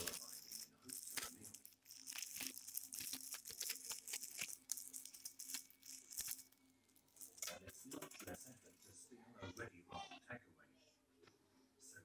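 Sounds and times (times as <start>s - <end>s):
plastic wrapping crinkling and tearing: 0.0s - 7.6s.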